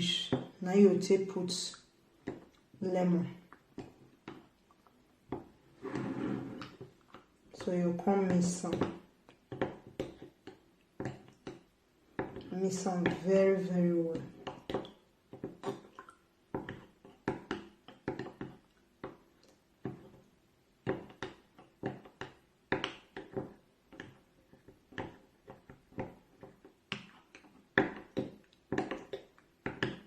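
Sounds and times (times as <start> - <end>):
spoon stirring and tapping container: 16.6 - 19.2.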